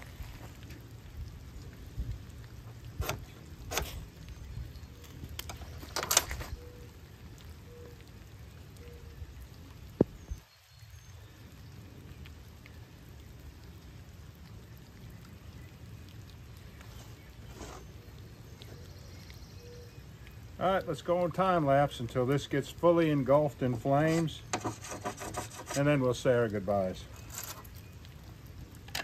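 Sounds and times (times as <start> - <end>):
steady rain falling: 0.0 - 29.0
ferro rod scraping strikes: 24.1 - 25.9.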